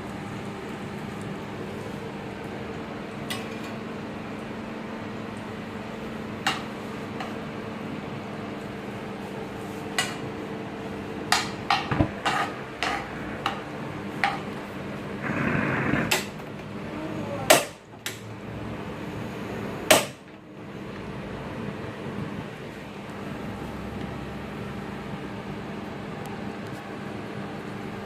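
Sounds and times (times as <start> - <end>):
steady low hum: 0.0 - 28.0
utensils knocking on pan and dishes: 11.3 - 14.5.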